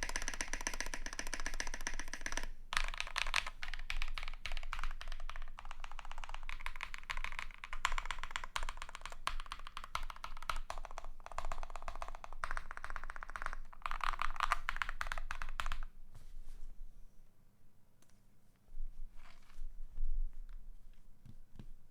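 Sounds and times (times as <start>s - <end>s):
mechanical keyboard typing: 0.0s - 15.9s.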